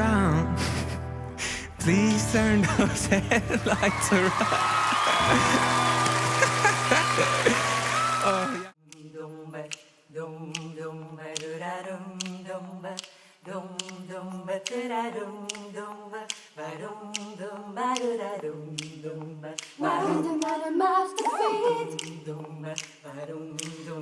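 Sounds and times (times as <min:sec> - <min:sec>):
low bass voice: 0:01.7 - 0:04.5
a cappella harmony singing: 0:01.8 - 0:05.9, 0:07.4 - 0:24.0
sharp beat clicks: 0:21.9 - 0:24.0.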